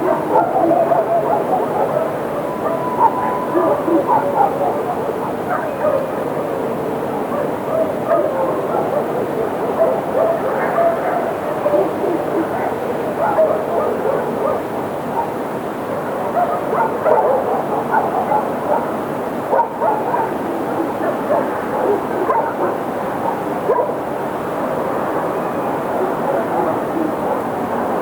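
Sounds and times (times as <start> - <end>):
wolves yipping and whining: 0.0 - 6.3, 7.3 - 14.6, 16.0 - 24.0, 25.9 - 28.0.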